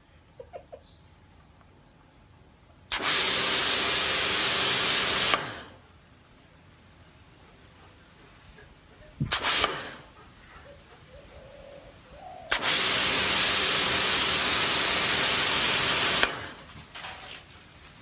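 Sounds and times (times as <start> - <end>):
hissing spray: 2.9 - 5.8, 9.3 - 10.2, 12.5 - 16.8.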